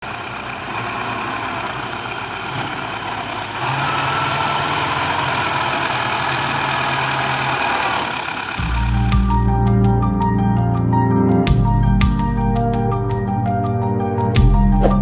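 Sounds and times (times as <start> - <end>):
tractor diesel engine running: 0.0 - 10.3
music: 8.6 - 15.0.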